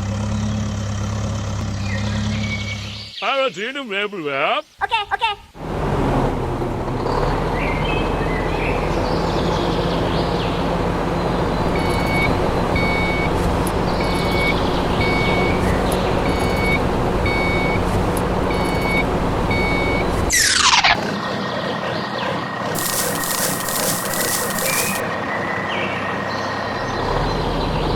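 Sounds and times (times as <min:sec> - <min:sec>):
small motor humming: 0:22.8 - 0:25.0.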